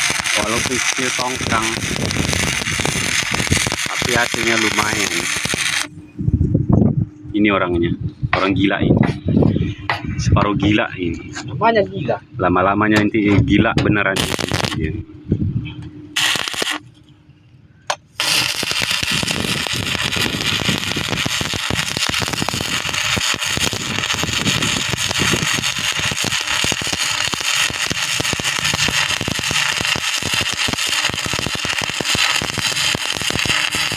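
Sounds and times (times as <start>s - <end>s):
welding arc crack: 0.0s - 5.9s, 14.2s - 14.9s, 16.2s - 16.9s, 17.9s - 33.9s
arc welding crackle and sizzle: 0.0s - 6.0s, 14.2s - 14.9s, 16.2s - 16.9s, 17.9s - 33.9s.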